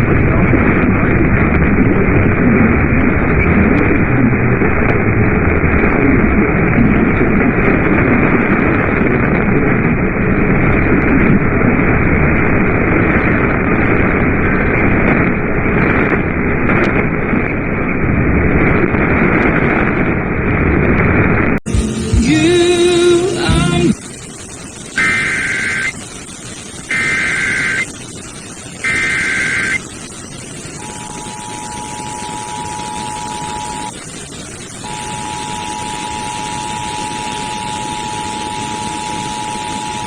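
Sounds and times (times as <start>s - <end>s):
muffled radio static: 0.0s - 40.0s.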